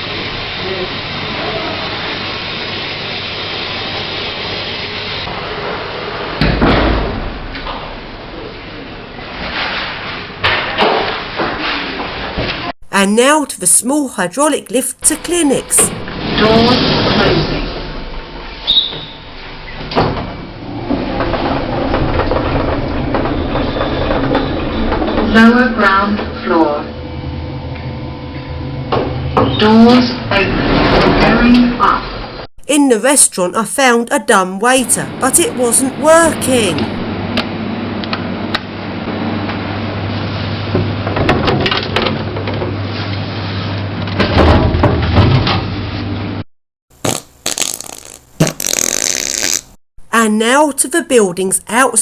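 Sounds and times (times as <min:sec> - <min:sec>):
lift rumble and hum: 0:20.2 - 0:32.5
platform lift mechanical drone: 0:34.8 - 0:39.1.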